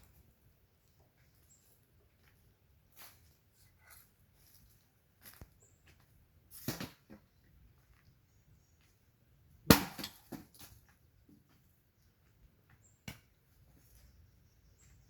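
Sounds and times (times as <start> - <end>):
axe chopping wood: 9.7 - 10.5.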